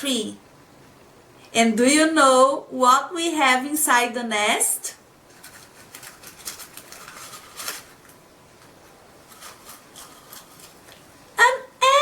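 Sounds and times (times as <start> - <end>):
faint rustling: 5.2 - 11.2.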